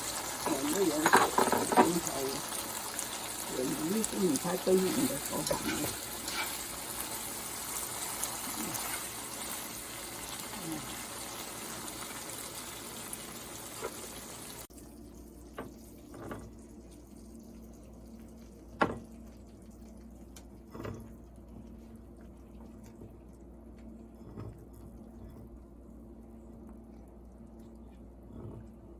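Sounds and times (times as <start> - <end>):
water running from a tap: 0.0 - 23.0.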